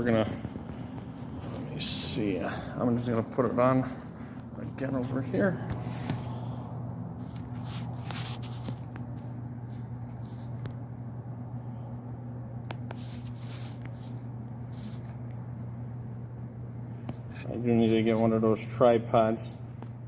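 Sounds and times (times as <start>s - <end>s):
low electrical hum: 0.0s - 20.0s
rustling and clicks of handling: 7.2s - 10.8s.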